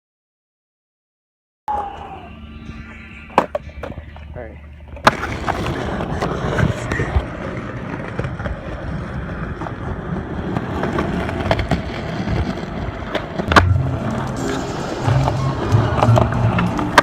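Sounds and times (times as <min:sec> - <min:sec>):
skateboard wheels rolling on pavement: 0:02.7 - 0:17.0
loud skateboard clack: 0:05.0 - 0:17.0
music with bass line: 0:13.5 - 0:17.0.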